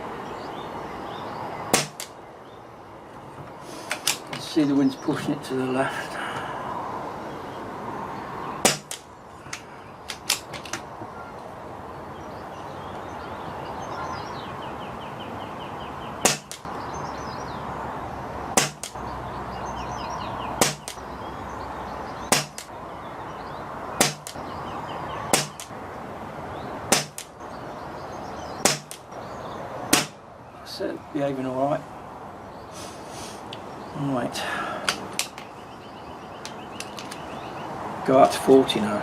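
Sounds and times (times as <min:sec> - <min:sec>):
air rifle shots: 0:01.7 - 0:02.2, 0:08.6 - 0:09.1, 0:16.2 - 0:16.7, 0:18.5 - 0:19.0, 0:20.6 - 0:21.0, 0:22.3 - 0:22.7, 0:24.0 - 0:24.4, 0:25.3 - 0:25.7, 0:26.9 - 0:27.4, 0:28.6 - 0:29.0, 0:29.9 - 0:30.2
faint bird chirps: 0:12.2 - 0:17.7.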